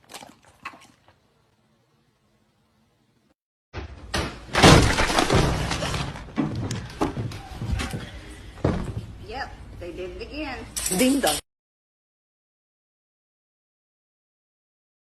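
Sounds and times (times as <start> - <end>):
something crashing and shattering: 4.5 - 6.4.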